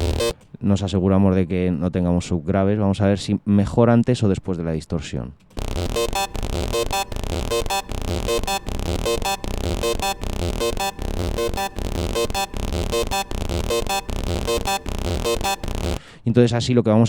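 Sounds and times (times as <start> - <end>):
distorted synth notes: 0.0 - 0.3, 5.6 - 16.0
distorted techno kick: 0.0 - 0.3, 5.6 - 16.0.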